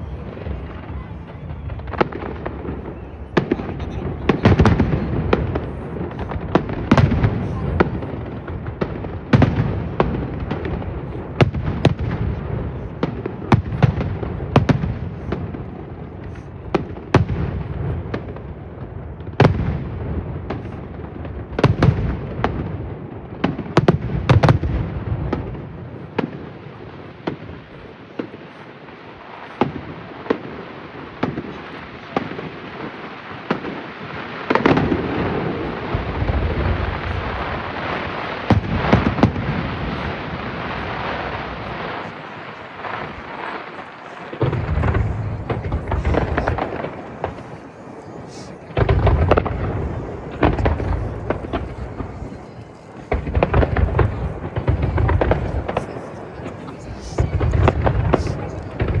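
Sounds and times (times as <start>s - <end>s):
fireworks bursting: 0.0s - 59.0s
fireworks crackling: 0.0s - 59.0s.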